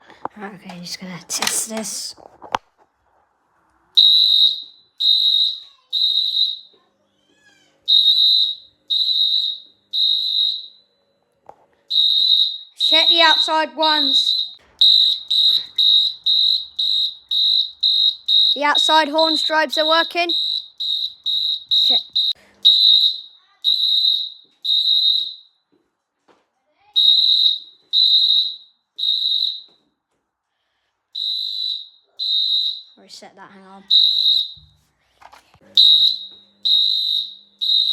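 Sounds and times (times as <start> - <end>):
fire alarm high-pitched beeps: 4.0 - 6.8, 7.9 - 11.1, 11.9 - 25.6, 26.9 - 29.8, 31.2 - 33.0, 33.9 - 34.7, 35.8 - 37.9.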